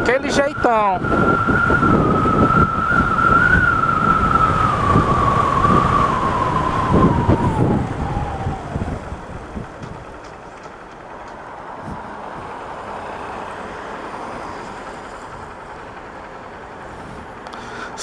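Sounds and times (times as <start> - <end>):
low rumble of traffic: 0.0 - 18.0
siren high tone dropping: 0.3 - 10.1.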